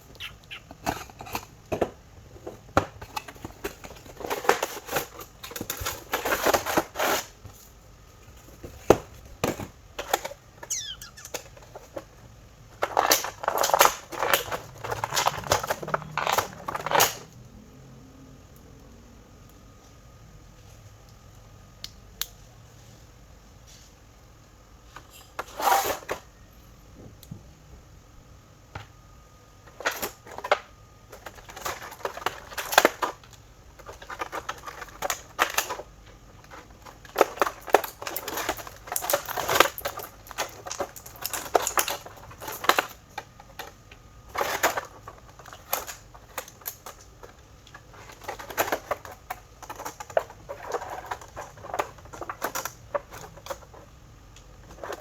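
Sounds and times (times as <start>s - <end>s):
plastic and cardboard crinkling: 0.2s - 17.3s, 29.7s - 55.0s.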